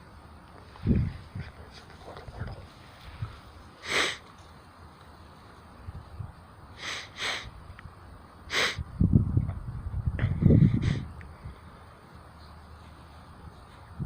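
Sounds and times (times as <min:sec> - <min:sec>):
sharp sniffs of breath: 0:03.8 - 0:04.3, 0:06.8 - 0:07.5, 0:08.5 - 0:08.8, 0:10.2 - 0:11.8.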